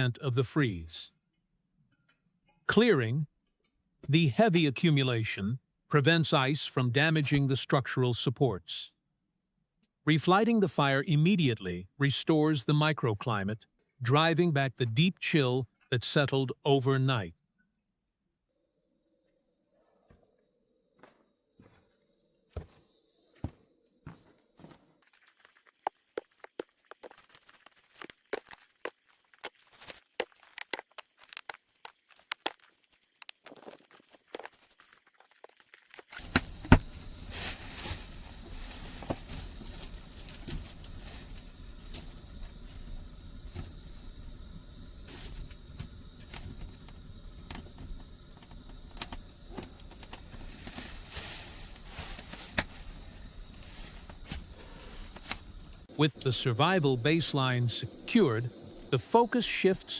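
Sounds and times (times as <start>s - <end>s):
wood fire hissing and crackling: 25.2s - 59.9s.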